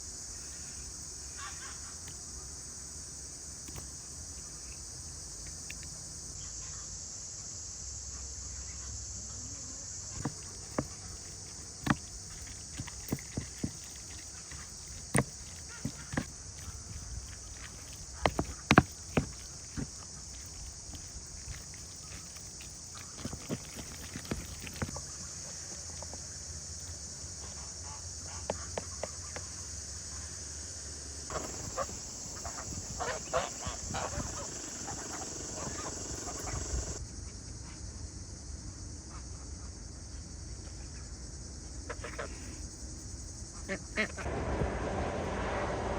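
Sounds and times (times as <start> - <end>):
insects chirping: 0.0 - 44.4
sharp knocks and taps: 10.2 - 25.0.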